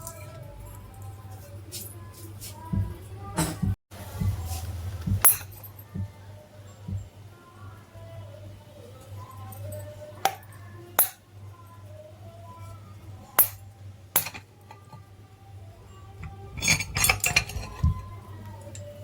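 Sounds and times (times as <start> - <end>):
faint background music: 0.0 - 19.0
metal clattering: 5.0 - 6.1, 14.2 - 15.0, 16.2 - 18.9
metal tools clinking on workbench: 5.1 - 5.8, 14.2 - 15.0, 16.2 - 18.9.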